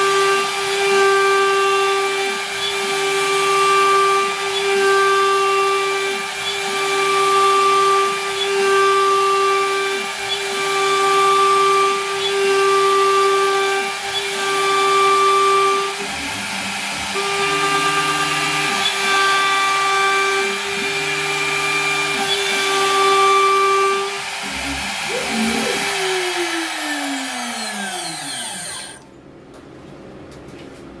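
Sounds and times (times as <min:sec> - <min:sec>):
router spindle cutting plywood: 0:00.0 - 0:29.0
axis motor whine: 0:00.0 - 0:29.1
spindle winding down: 0:16.0 - 0:29.0.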